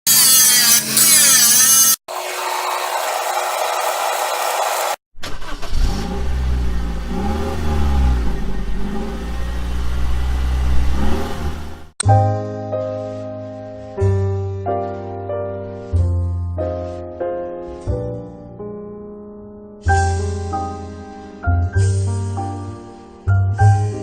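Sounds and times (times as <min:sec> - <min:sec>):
car engine revving: 0:03.7 - 0:11.9.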